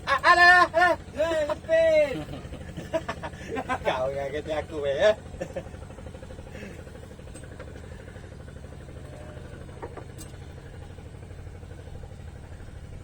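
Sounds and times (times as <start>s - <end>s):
small boat engine idling: 0.0s - 13.0s.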